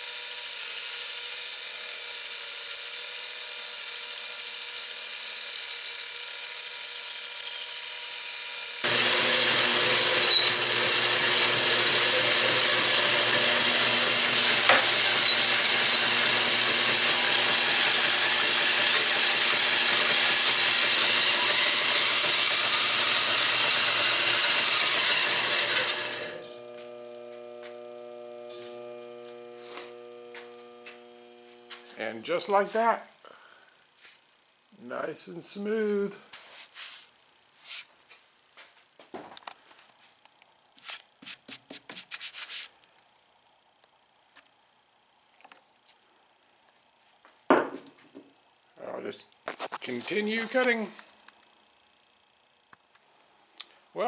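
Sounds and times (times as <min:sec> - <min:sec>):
motor and blade humming: 0:00.0 - 0:32.6
saw cutting wood: 0:00.0 - 0:32.9, 0:49.6 - 0:50.9.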